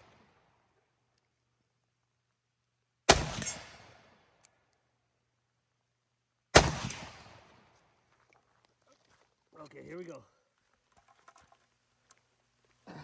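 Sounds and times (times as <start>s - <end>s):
rifle shots with echo: 3.1s - 4.2s, 6.6s - 7.6s.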